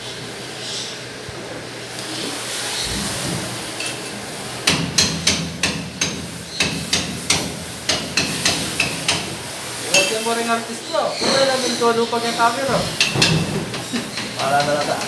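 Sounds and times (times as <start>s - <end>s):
hammer striking metal: 4.7s - 10.2s, 12.9s - 15.0s.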